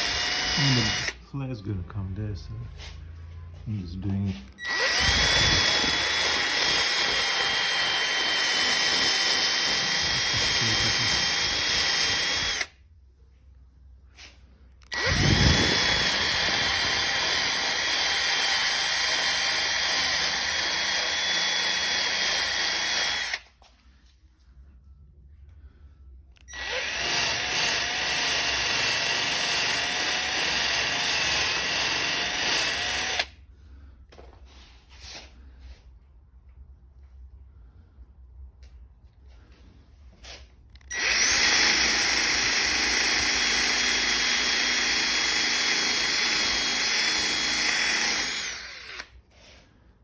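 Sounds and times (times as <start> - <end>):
electric sander whining: 0.0 - 1.2, 4.6 - 12.7, 14.8 - 23.4.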